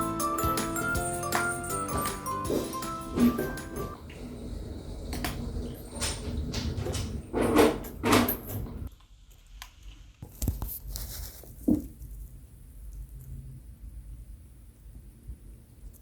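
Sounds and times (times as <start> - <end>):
rustling: 10.2 - 13.4.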